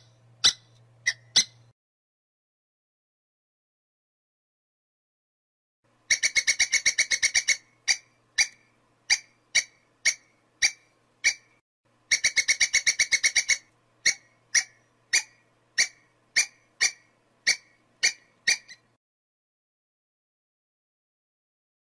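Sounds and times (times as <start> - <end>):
squirrel chirping: 0.0 - 1.7, 6.1 - 19.0.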